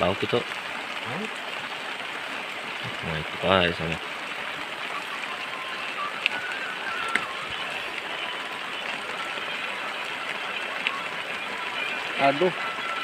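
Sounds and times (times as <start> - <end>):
steady rain falling: 0.0 - 13.0.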